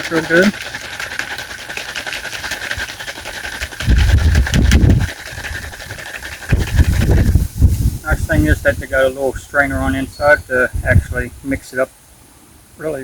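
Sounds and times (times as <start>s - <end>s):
liquid sloshing and rattling: 0.0s - 8.8s
shaker bottle being shaken: 0.0s - 9.0s.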